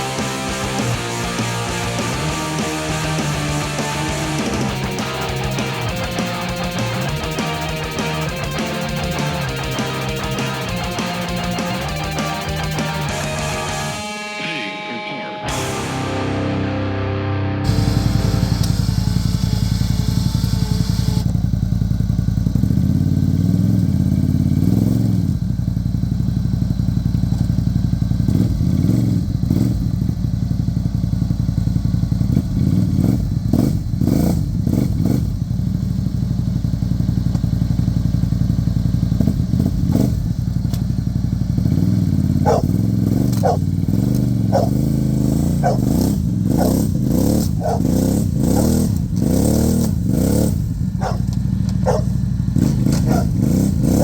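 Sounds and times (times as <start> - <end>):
engine clatter: 0.0 - 14.0, 17.7 - 54.0
vehicle engine revving: 0.0 - 14.0, 17.6 - 54.0.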